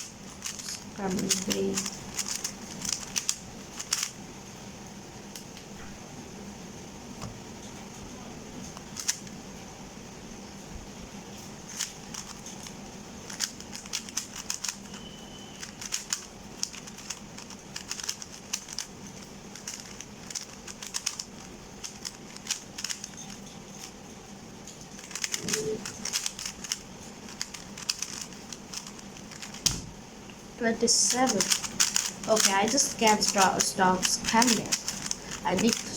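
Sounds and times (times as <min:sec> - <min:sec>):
puzzle cube layers clicking: 0:00.0 - 0:04.2, 0:08.8 - 0:09.3, 0:11.7 - 0:23.4, 0:25.0 - 0:29.8, 0:31.0 - 0:35.9.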